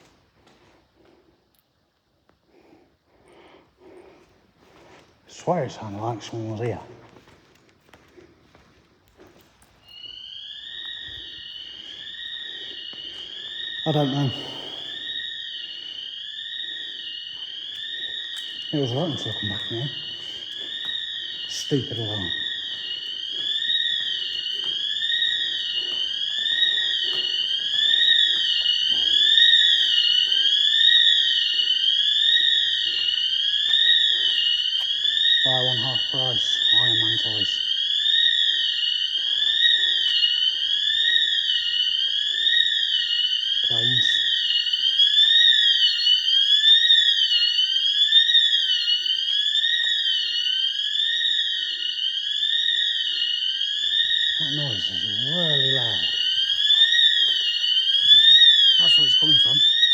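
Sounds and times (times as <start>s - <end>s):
intruder alarm wailing: 0.0s - 1.3s, 2.5s - 59.9s.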